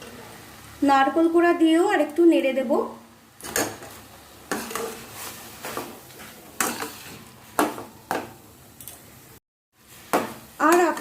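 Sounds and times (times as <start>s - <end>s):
spatula scraping a pan: 3.5s - 7.7s.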